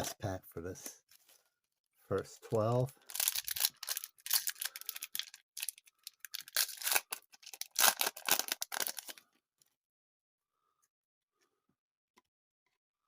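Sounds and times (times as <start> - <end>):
wrapper tearing and crinkling: 3.0 - 9.2.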